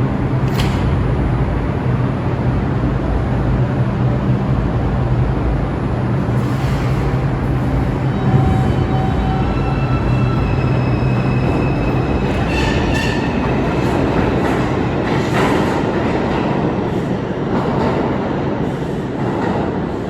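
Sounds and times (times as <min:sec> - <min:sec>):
train wheels rumbling on rail: 0:00.0 - 0:20.0
faint train whine: 0:01.2 - 0:15.2
high wheel squeals: 0:06.4 - 0:13.7.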